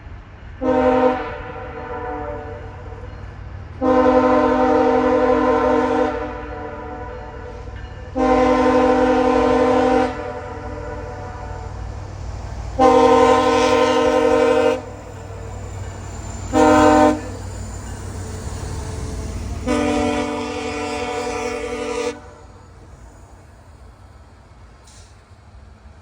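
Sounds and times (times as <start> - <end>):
low rumble of train: 0.0 - 26.0
locomotive air horn blasts: 0.6 - 2.7, 3.8 - 7.6, 8.2 - 11.6, 12.8 - 15.0, 16.5 - 17.3, 19.6 - 22.5.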